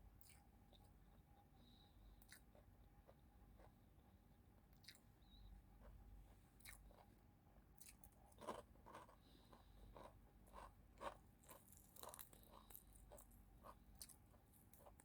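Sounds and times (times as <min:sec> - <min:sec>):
person chewing and crunching food: 0:02.2 - 0:03.2, 0:04.7 - 0:05.1, 0:06.5 - 0:07.2, 0:07.8 - 0:15.0.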